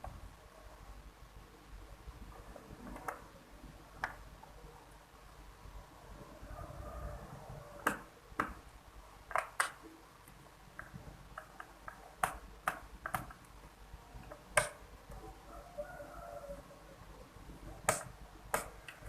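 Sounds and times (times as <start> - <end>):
tools clicking and tapping on laptop: 4.0 - 4.3, 7.8 - 15.3, 17.8 - 19.0.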